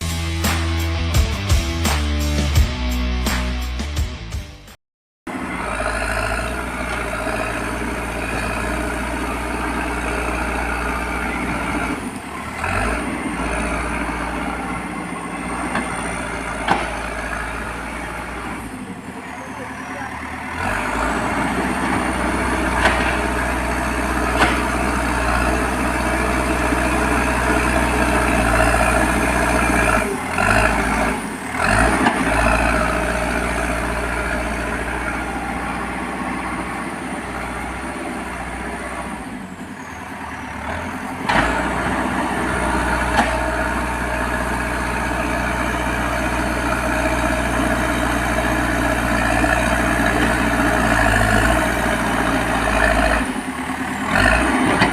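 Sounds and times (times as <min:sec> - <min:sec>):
heavy diesel engine running: 0:05.3 - 0:54.9.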